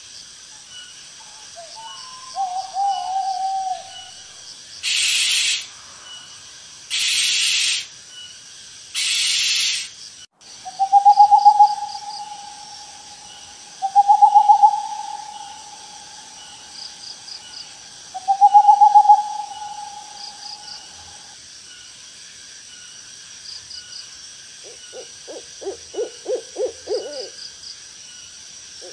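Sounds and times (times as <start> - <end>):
crickets chirping: 0.0 - 28.9
owl hoots: 1.6 - 5.7, 6.9 - 7.9, 9.0 - 9.9, 10.6 - 21.3, 24.6 - 27.4
owl whistled calls: 1.6 - 5.7, 6.9 - 7.9, 9.0 - 9.9, 10.6 - 21.3, 24.6 - 27.4
owl hissing screeches: 4.8 - 5.8, 6.9 - 7.9, 9.0 - 10.0.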